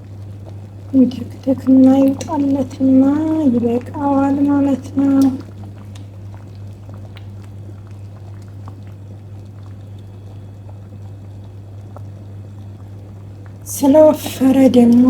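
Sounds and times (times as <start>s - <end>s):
thick soup bubbling in a pot: 0.0s - 15.0s.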